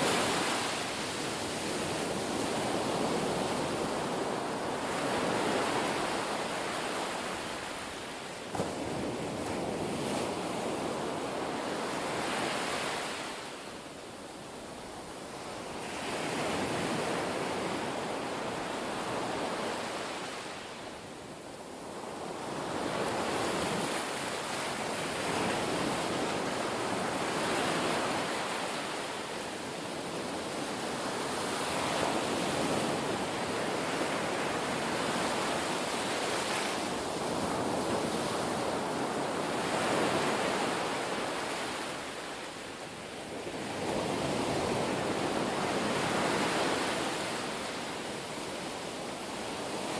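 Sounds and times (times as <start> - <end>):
ocean waves rushing: 0.0 - 1.6.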